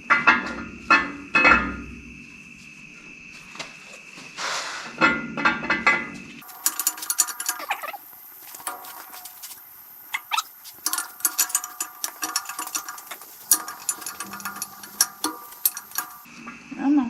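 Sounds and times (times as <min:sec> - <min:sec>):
metal engine parts clinking: 0:00.0 - 0:02.0, 0:05.0 - 0:16.3.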